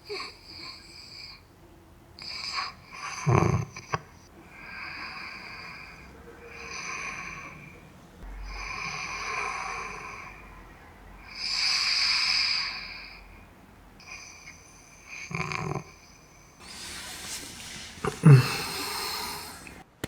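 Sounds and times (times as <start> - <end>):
man breathing heavily in sleep: 4.4 - 7.8, 11.2 - 14.8, 16.6 - 19.8.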